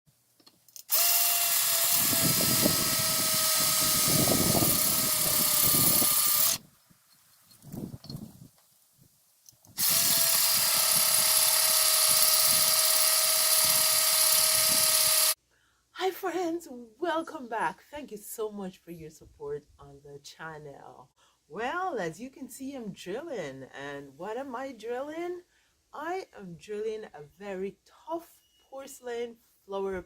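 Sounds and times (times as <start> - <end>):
electric drill grinding into porcelain: 0.8 - 6.6, 9.8 - 15.4.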